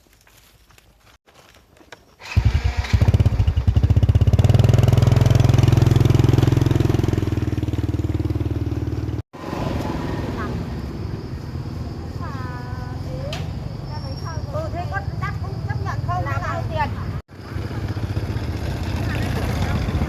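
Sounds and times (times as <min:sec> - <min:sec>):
small engine running: 0:02.2 - 0:09.1, 0:17.3 - 0:20.0.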